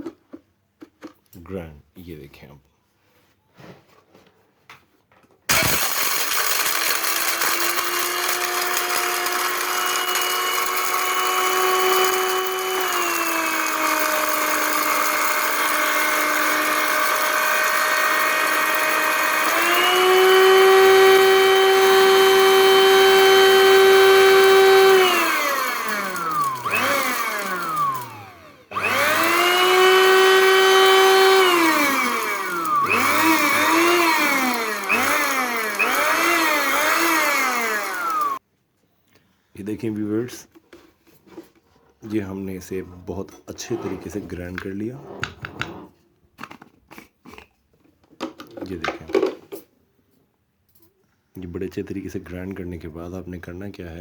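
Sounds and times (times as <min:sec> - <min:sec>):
electric grinder whining: 0:05.5 - 0:38.4.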